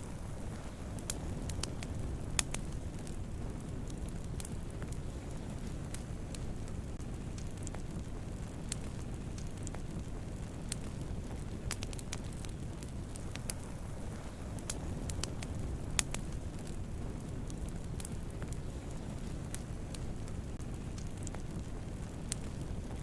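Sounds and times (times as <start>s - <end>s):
campfire crackling and popping: 0.0s - 23.0s.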